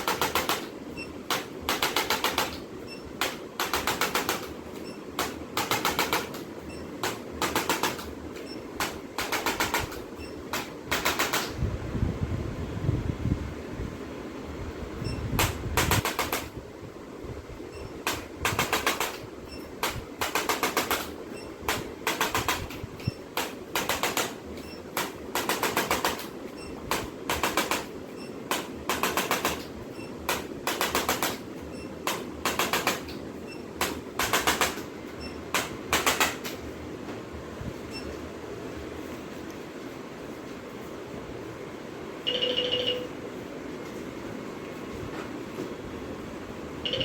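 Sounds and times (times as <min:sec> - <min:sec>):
rapid mechanical tapping: 0:00.0 - 0:11.6, 0:15.4 - 0:16.6, 0:18.0 - 0:36.7.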